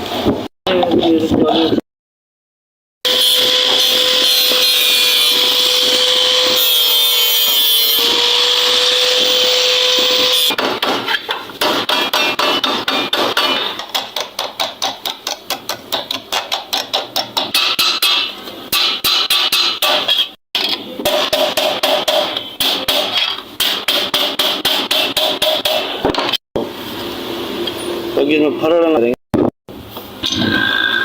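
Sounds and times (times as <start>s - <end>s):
hammering on sheet metal: 10.5s - 20.1s, 21.0s - 26.0s.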